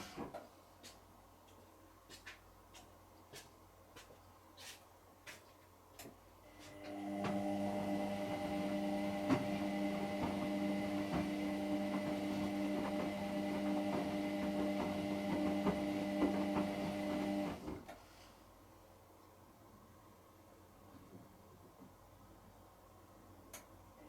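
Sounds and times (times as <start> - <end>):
washing machine drum motor humming: 6.6 - 17.9.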